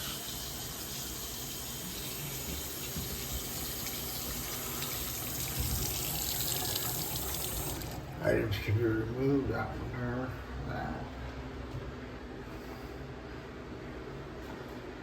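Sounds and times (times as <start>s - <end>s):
faucet running into sink: 0.0s - 8.0s.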